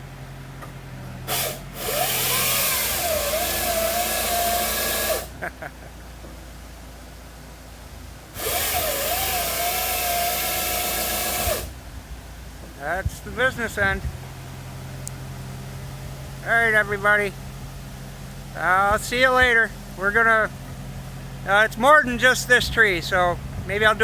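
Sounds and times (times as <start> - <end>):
machine engine running: 0.0 - 6.2, 7.9 - 24.0
chainsaw cutting wood: 1.3 - 5.5, 8.3 - 11.8.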